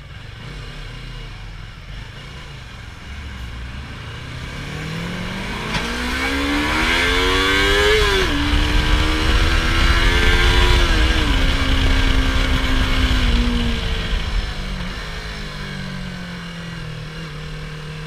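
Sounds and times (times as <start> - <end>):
motorcycle engine accelerating: 0.0 - 18.0.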